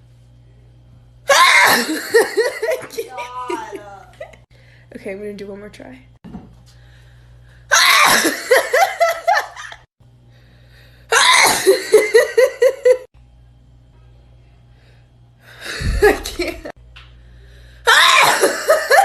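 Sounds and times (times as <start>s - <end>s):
woman sneezing: 1.3s - 2.0s, 11.1s - 11.8s, 17.9s - 18.7s.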